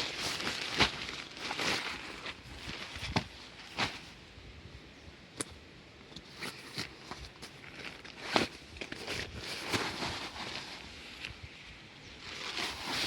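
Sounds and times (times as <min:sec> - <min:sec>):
rustling: 0:00.0 - 0:04.3, 0:06.1 - 0:11.4, 0:12.1 - 0:13.0.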